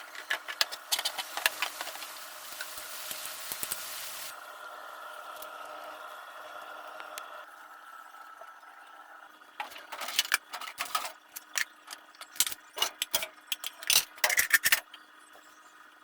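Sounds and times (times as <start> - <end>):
household items clinking and clattering: 0.0 - 2.8, 9.6 - 15.0
faint steady hum: 0.0 - 16.0.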